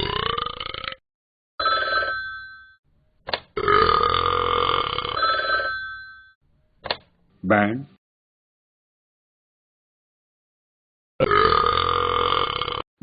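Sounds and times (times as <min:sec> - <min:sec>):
person burping loudly: 0:00.0 - 0:01.0, 0:03.6 - 0:05.2, 0:11.2 - 0:12.9.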